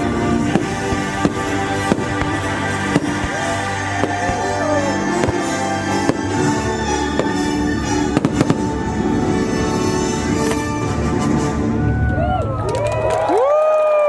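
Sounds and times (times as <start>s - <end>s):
fireworks bursts banging: 0.0s - 10.9s
soundtrack music: 0.0s - 12.3s.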